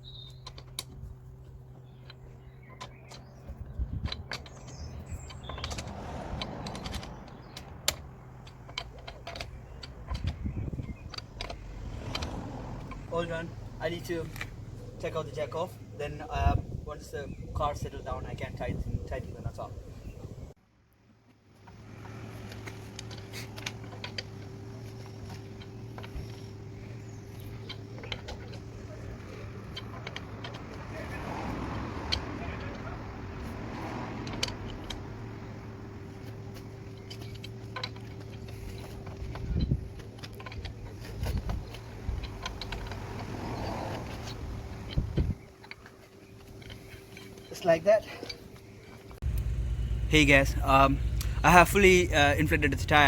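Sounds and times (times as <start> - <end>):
metal clicks and clanks: 0.1 - 14.8, 21.6 - 53.0
rustling: 21.5 - 53.0
machine hum: 48.8 - 53.0.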